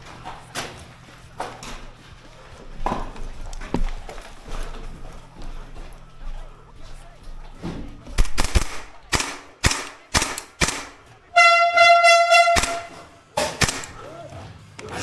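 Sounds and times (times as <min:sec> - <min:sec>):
airsoft gun shots: 0:08.2 - 0:11.1, 0:12.1 - 0:14.1
horn-like tone: 0:11.3 - 0:13.1.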